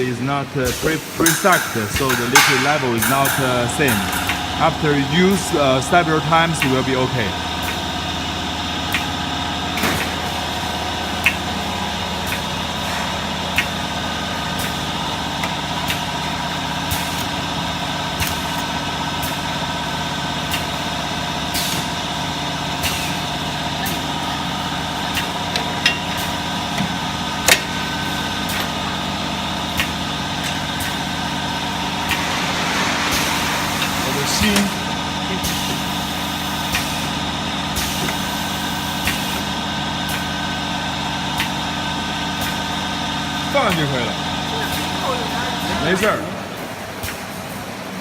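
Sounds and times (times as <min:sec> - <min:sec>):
machine humming: 0:00.0 - 0:48.0
machine clicks and clinks: 0:01.2 - 0:07.8.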